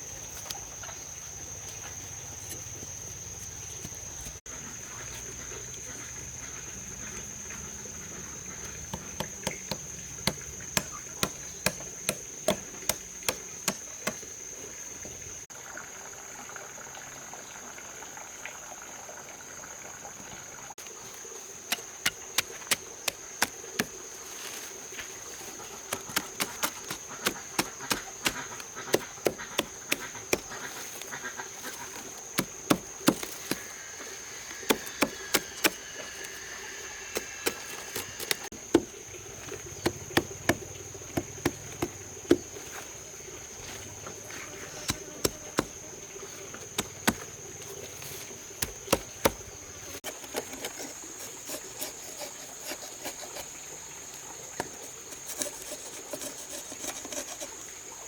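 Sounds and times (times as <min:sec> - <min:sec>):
insects droning: 0:00.0 - 0:58.0
tool striking wood: 0:08.9 - 0:14.2, 0:25.9 - 0:30.6, 0:31.7 - 0:33.7, 0:34.4 - 0:36.4, 0:37.2 - 0:42.9, 0:44.8 - 0:45.8, 0:48.6 - 0:50.8.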